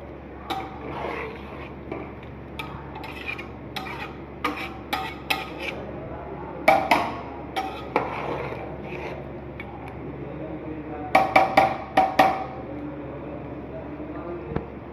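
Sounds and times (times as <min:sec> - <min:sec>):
metal spoon scraping a pan: 0:00.4 - 0:05.9, 0:06.7 - 0:09.7.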